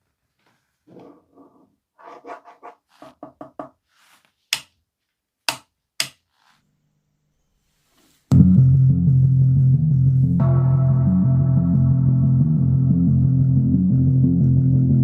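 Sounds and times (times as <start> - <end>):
loud music with heavy bass: 8.3 - 15.0.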